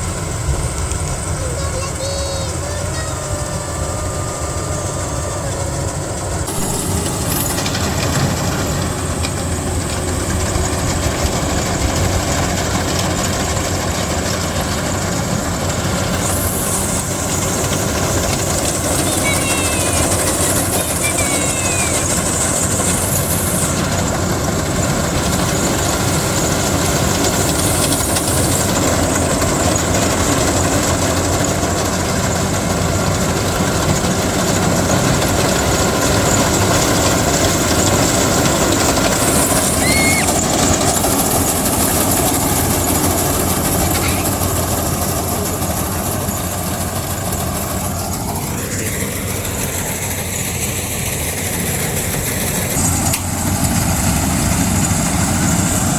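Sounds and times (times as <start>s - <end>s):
combine harvester running: 0.0s - 55.9s
rising tone: 3.1s - 10.8s.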